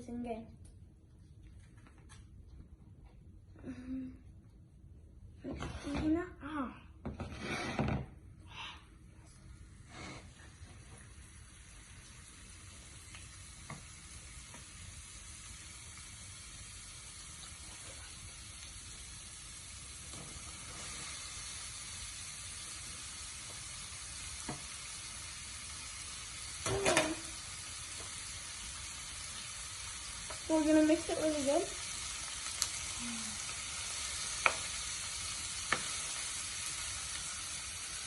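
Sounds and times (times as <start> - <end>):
food sizzling in pan: 9.4 - 38.0.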